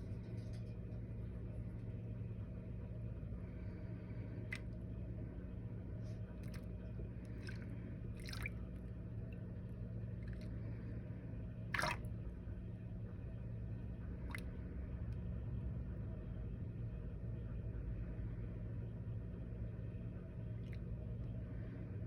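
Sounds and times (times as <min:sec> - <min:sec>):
steady low hum: 0:00.0 - 0:22.0
water drips: 0:07.3 - 0:08.6, 0:11.8 - 0:12.0.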